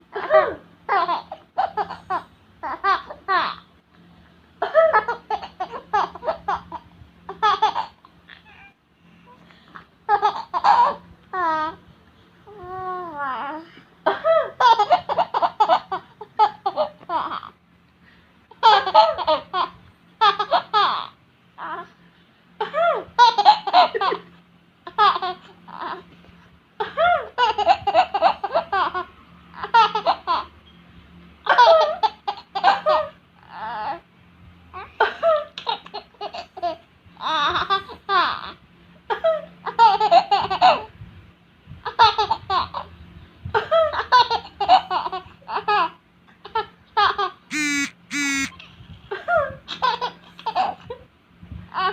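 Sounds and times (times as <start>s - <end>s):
baby laughing: 0.1s - 3.7s, 4.6s - 8.7s, 10.1s - 11.8s, 14.1s - 17.6s, 18.5s - 21.9s, 22.6s - 26.0s, 26.8s - 30.5s, 31.4s - 34.0s, 34.8s - 40.9s, 43.5s - 51.0s.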